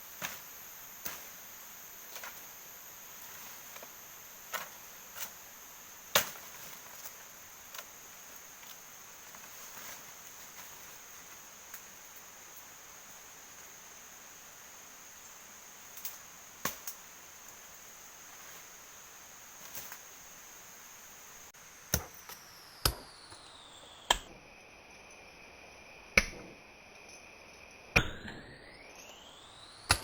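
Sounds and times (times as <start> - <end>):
sharp chopping knocks: 21.9 - 24.4, 26.2 - 26.6, 28.0 - 28.7, 29.8 - 30.0
steady high tone: 28.0 - 30.0.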